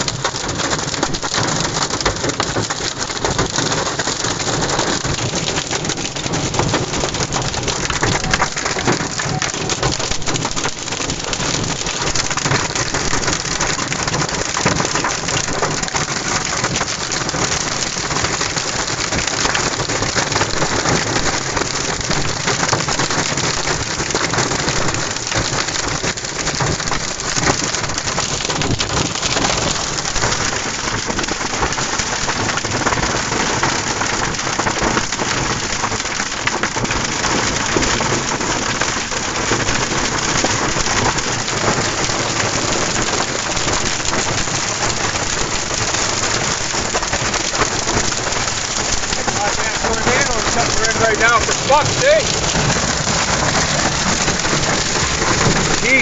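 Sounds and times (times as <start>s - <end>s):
hail and rain on a truck roof: 0.0s - 56.0s.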